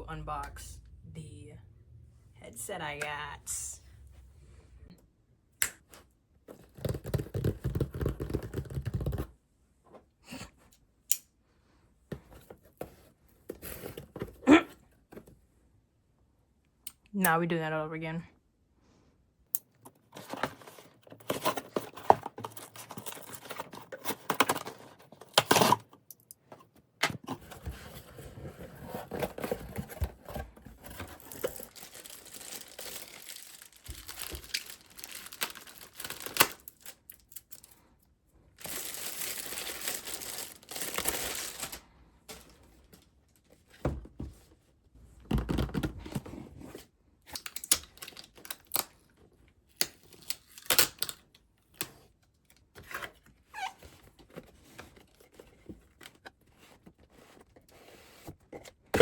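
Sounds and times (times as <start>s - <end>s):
packaging tearing and crinkling: 29.0s - 37.6s, 38.6s - 41.8s.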